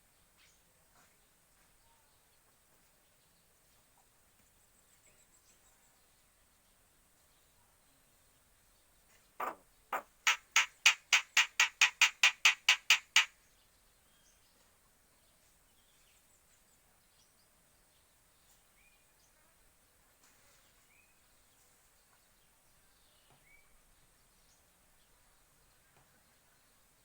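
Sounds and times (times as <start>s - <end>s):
faint bird chirps: 9.4s - 13.3s
starling harsh scolding call: 9.4s - 13.3s.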